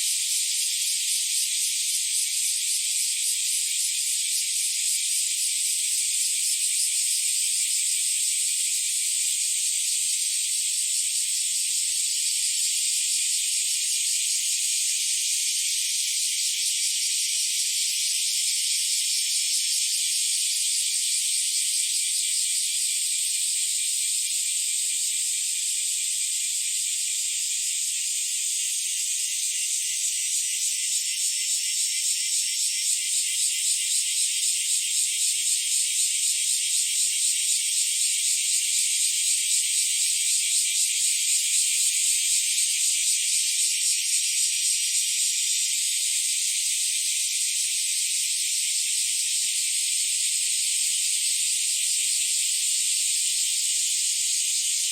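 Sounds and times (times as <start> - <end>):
cicadas buzzing: 0.0 - 54.9.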